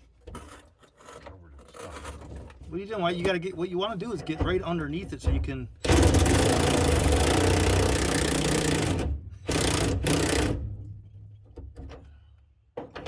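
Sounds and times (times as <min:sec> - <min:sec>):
power tool running: 0:05.8 - 0:10.7.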